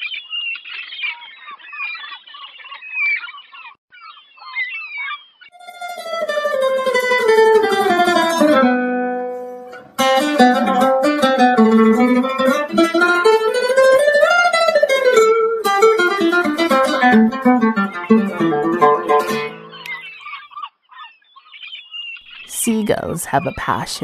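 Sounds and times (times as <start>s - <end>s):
plucked string melody: 5.6s - 20.1s.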